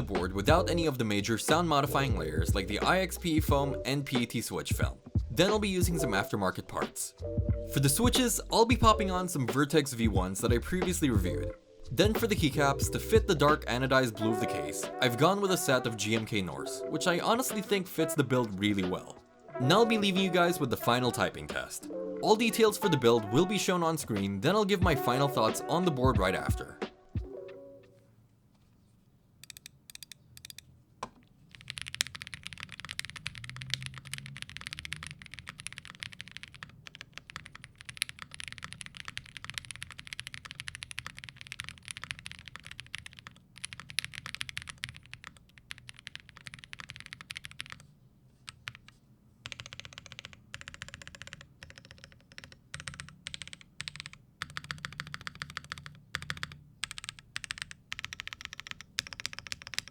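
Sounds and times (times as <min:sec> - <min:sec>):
mechanical keyboard typing: 0:29.4 - 0:30.7, 0:31.4 - 0:47.9, 0:48.5 - 0:59.9.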